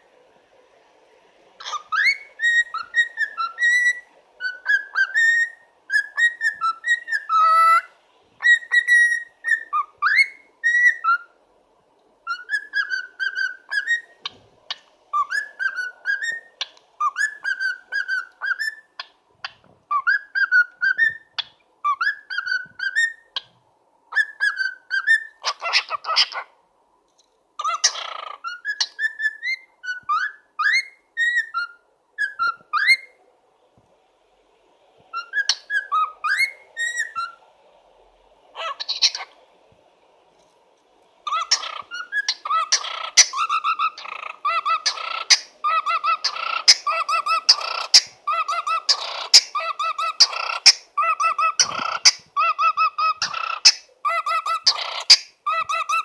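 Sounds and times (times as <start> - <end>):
cockatiel whistling a tune: 1.6 - 11.3, 12.2 - 14.2, 15.1 - 18.9, 19.9 - 23.2, 24.1 - 25.8, 27.6 - 33.2, 35.1 - 37.4, 41.3 - 56.0.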